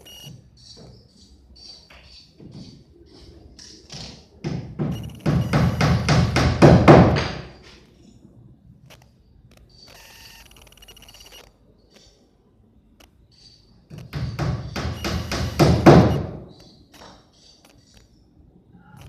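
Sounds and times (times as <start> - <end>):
rapid knocks: 4.4 - 7.5, 13.9 - 16.2.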